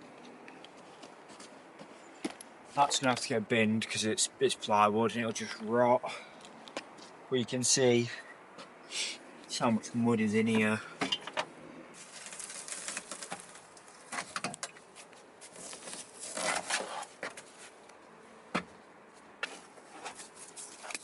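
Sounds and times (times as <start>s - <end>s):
scraping and rustling of car parts: 10.5s - 17.9s, 18.6s - 21.0s.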